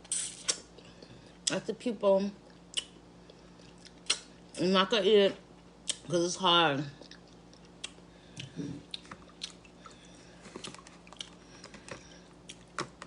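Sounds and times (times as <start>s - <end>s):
person chewing: 2.4s - 4.2s, 7.0s - 12.9s.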